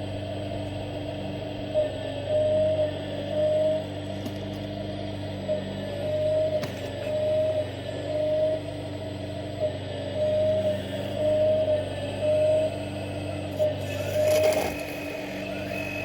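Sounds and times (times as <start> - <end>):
pump whine pulses: 0.0 - 16.0
hydraulic pump humming: 10.3 - 16.0.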